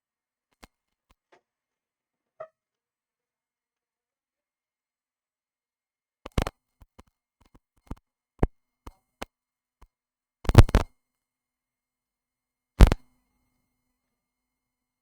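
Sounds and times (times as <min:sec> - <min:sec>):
sharp clicks and knocks: 0:10.5 - 0:10.8, 0:12.8 - 0:13.0.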